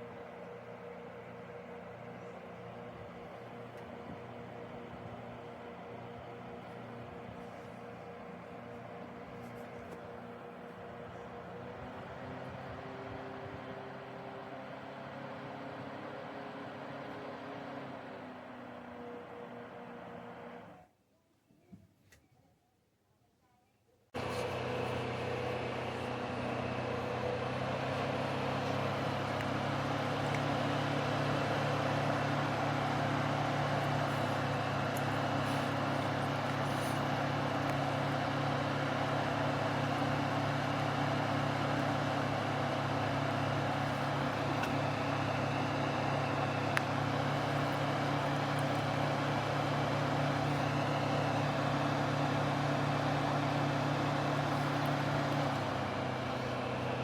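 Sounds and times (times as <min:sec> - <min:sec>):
small fan motor humming: 0:24.2 - 0:57.0.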